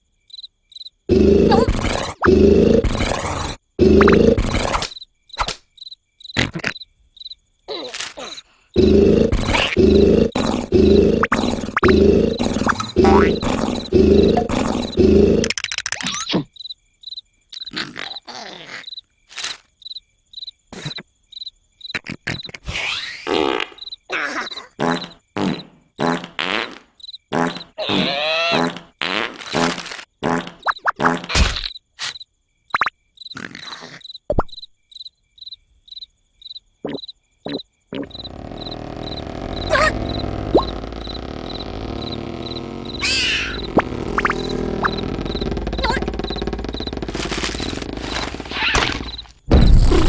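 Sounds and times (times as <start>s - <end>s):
cricket chirping: 0.0s - 28.8s, 29.4s - 50.0s
cartoon rumbling snores: 1.1s - 4.9s, 8.2s - 15.6s, 17.7s - 18.9s, 24.3s - 31.4s, 33.3s - 34.0s, 36.9s - 49.2s.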